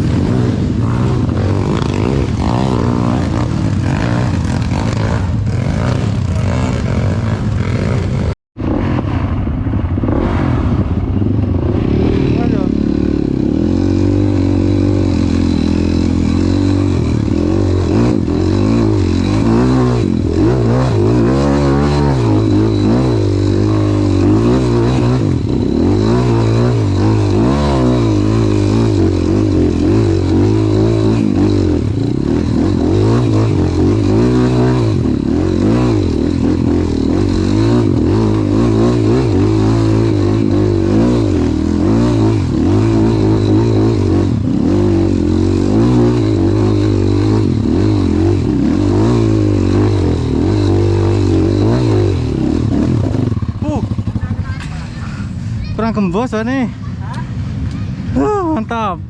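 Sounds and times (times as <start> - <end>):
trail motorcycle engines revving: 0.0 - 59.0
engine clatter: 9.8 - 57.9.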